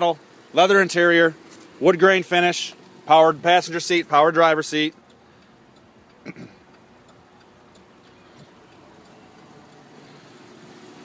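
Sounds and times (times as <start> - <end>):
faint tick: 4.9 - 9.9.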